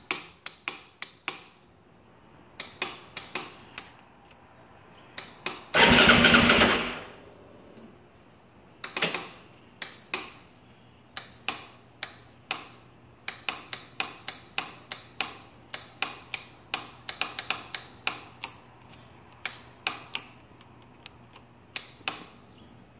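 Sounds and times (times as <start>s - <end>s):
starter solenoid clicking: 5.8s - 7.0s
loud burst of noise: 5.8s - 7.2s.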